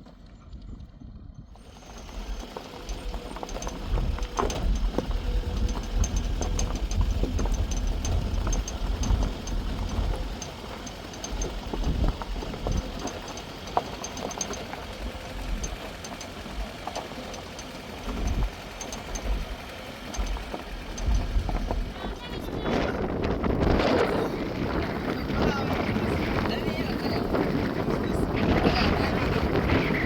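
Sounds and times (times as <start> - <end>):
wind gusting on microphone: 0.5 - 13.6, 17.9 - 30.0
faint high ticks: 1.7 - 21.8.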